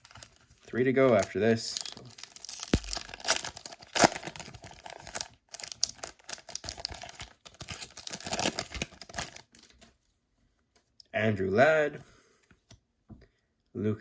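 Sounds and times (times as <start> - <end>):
wrapper tearing and crinkling: 0.0 - 9.8.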